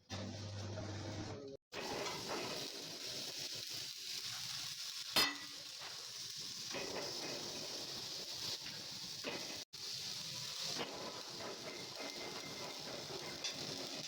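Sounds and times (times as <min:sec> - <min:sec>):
arc welding crackling hiss: 0:00.1 - 0:14.0
sharp metallic clang: 0:05.2 - 0:05.6.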